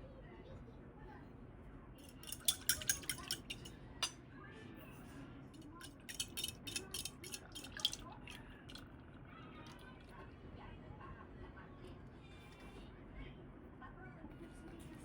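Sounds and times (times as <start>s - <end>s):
cutlery and dishes clinking: 2.0s - 4.2s, 5.6s - 8.0s.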